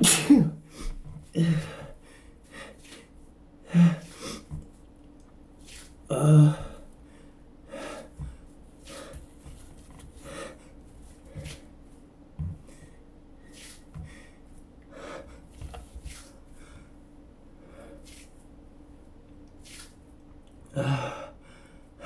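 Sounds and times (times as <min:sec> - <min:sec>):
man sneezing: 0:00.0 - 0:00.6.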